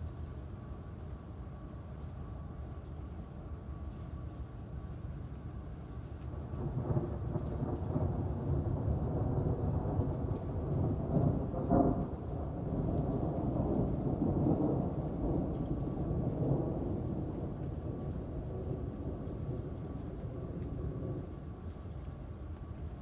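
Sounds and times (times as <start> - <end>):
rain falling: 0.0 - 23.0
rolling thunder: 6.4 - 21.6.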